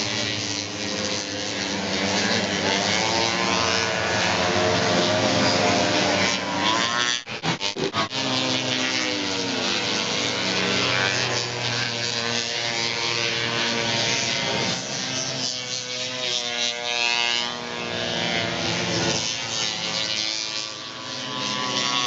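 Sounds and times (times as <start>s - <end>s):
snowmobile engines revving: 0.0s - 22.0s.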